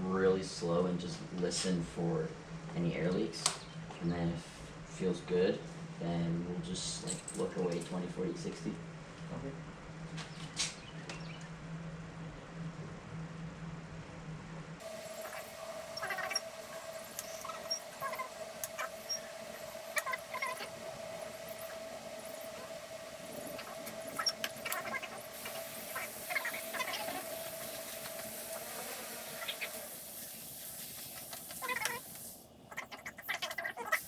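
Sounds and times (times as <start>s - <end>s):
compressed air hissing with whistle: 14.8s - 32.5s.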